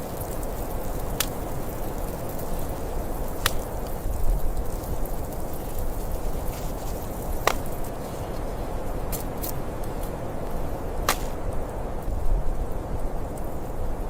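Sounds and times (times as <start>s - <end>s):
sharp snaps: 1.1s - 1.6s, 3.0s - 4.2s, 6.6s - 8.0s, 11.0s - 11.6s.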